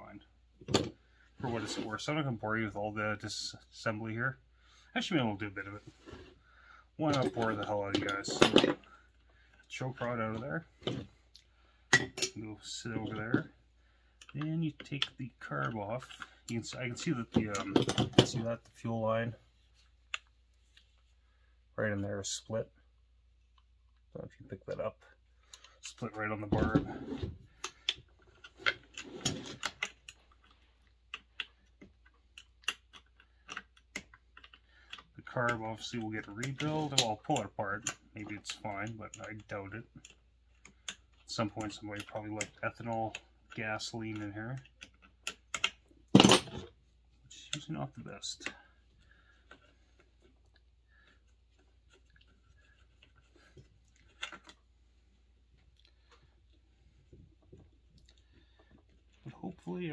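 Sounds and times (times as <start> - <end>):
small parts clicking and tapping: 27.5 - 54.8.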